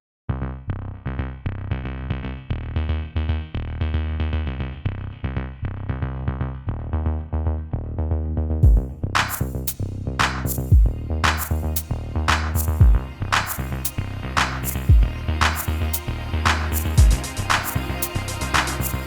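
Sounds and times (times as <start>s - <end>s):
drum machine beat: 8.6s - 11.6s, 12.3s - 13.7s, 14.4s - 15.8s, 16.5s - 19.0s
sharp percussion hits: 16.5s - 19.0s.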